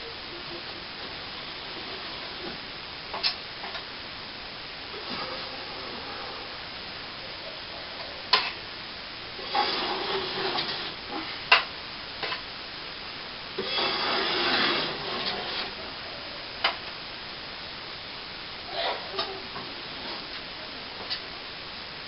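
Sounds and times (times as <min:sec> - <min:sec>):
plastering tool scraping cement: 0:09.4 - 0:11.0, 0:13.6 - 0:15.8.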